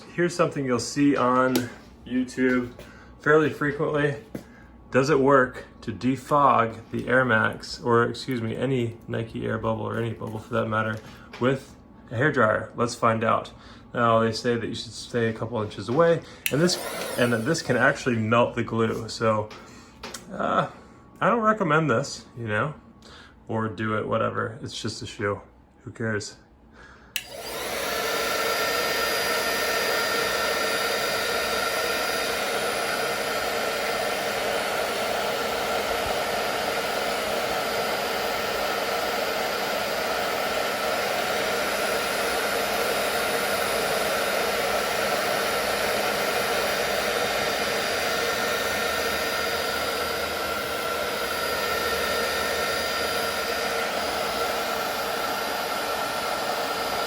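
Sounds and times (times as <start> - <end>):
hairdryer blowing: 0.0 - 4.5, 16.4 - 19.4, 27.2 - 57.0.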